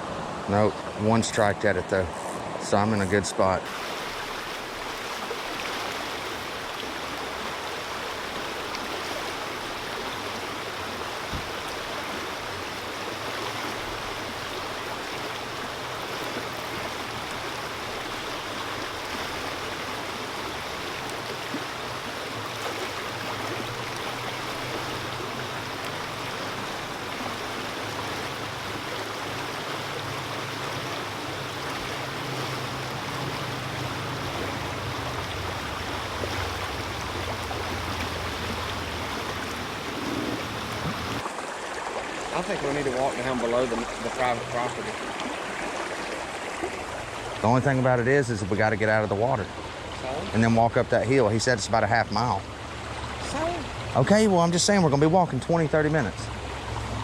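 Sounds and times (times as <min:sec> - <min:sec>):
creek water rushing over rocks: 0:00.0 - 0:57.0.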